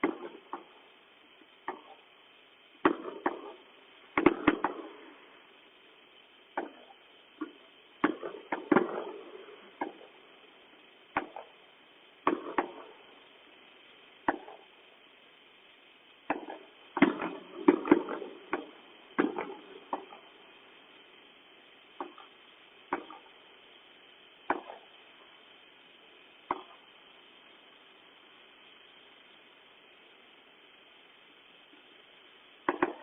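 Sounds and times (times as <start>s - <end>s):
fireworks bangs with echo: 0.0s - 0.9s, 2.7s - 5.6s, 6.4s - 13.3s, 14.2s - 14.8s, 16.2s - 21.2s, 21.9s - 23.6s, 24.4s - 25.3s, 26.4s - 27.0s, 32.6s - 33.0s.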